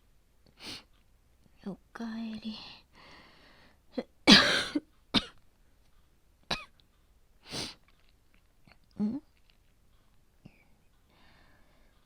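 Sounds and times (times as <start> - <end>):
woman coughing: 4.3 - 5.4, 6.5 - 6.7.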